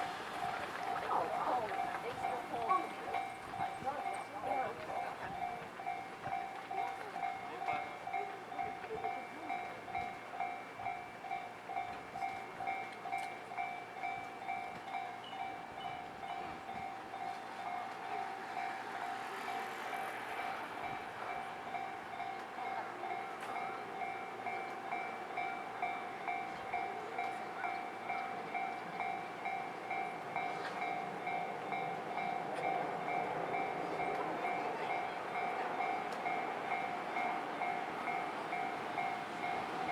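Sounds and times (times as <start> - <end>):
train passing: 0.0 - 39.9.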